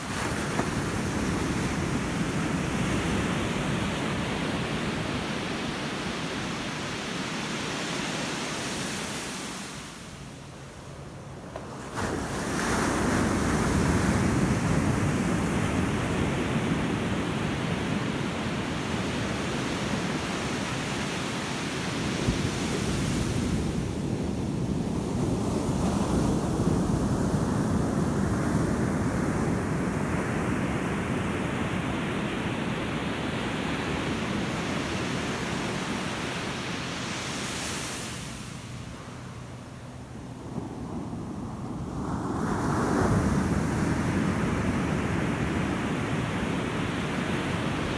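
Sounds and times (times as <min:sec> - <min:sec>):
ocean waves breaking: 0:10.9 - 0:47.9.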